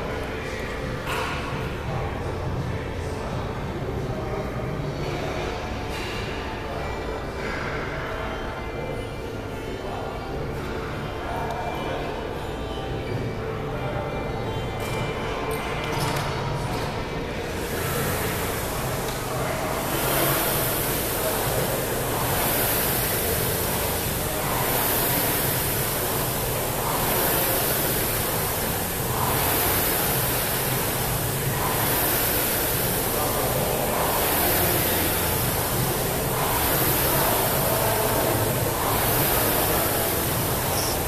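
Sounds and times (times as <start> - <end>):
rowing machine flywheel whooshing: 16.6 - 41.0.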